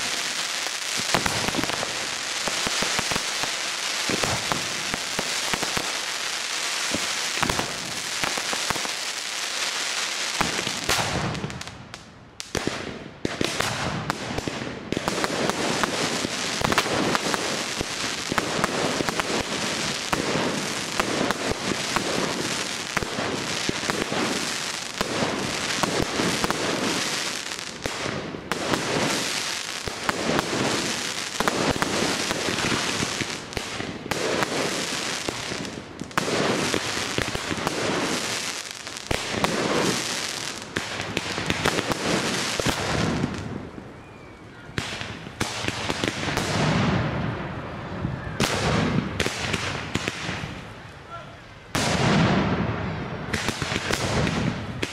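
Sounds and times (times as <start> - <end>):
fireworks crackling: 0.0 - 54.9.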